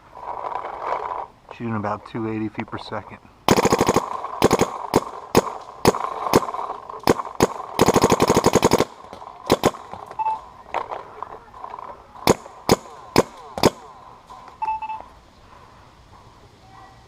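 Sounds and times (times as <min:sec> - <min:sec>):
paintball marker firing: 0:03.5 - 0:11.0, 0:12.2 - 0:14.0.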